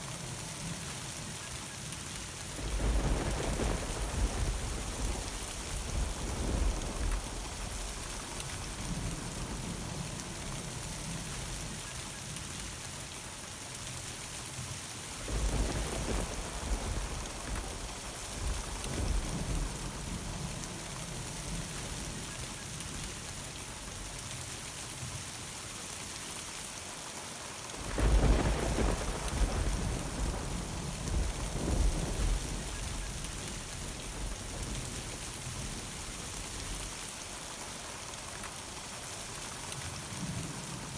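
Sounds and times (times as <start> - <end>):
rain hissing: 0.0 - 40.9
rolling thunder: 2.5 - 11.6, 15.2 - 22.4, 27.8 - 37.0.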